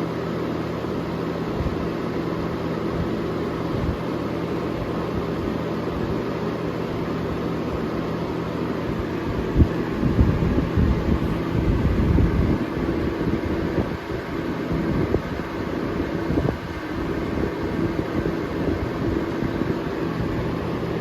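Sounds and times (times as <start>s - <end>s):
box fan air rushing: 0.0s - 21.0s
low motor hum: 0.0s - 21.0s
wind buffeting microphone: 9.3s - 20.4s.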